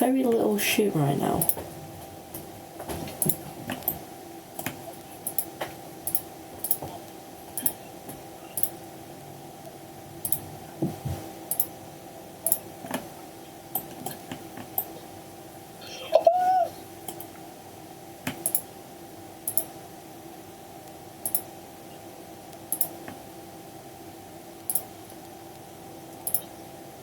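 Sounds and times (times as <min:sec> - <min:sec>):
faint steady hum: 0:00.0 - 0:27.0
mouse and keyboard clicks: 0:26.2 - 0:26.5.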